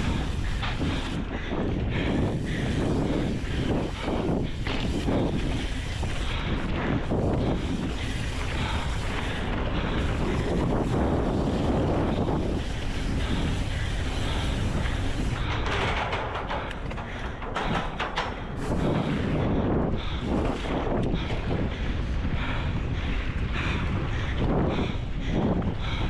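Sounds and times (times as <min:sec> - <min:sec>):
bike tyres on dirt trail: 0:00.0 - 0:26.0
wind rushing over microphone: 0:00.0 - 0:26.0
bike clatter knocks: 0:15.4 - 0:19.0.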